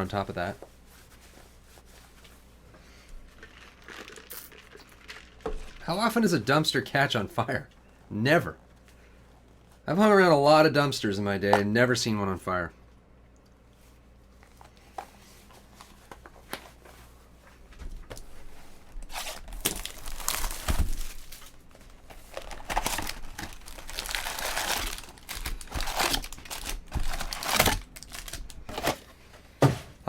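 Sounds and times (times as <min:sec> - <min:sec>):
foil wrappers crinkling and tearing: 0:19.0 - 0:29.0.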